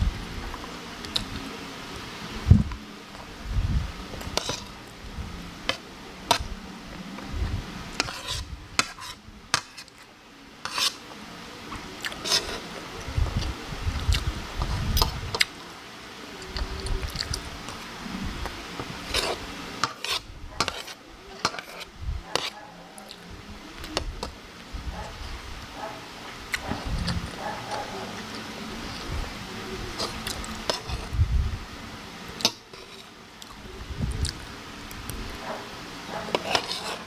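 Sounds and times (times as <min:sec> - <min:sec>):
chewing: 0:25.0 - 0:29.1, 0:35.0 - 0:37.0.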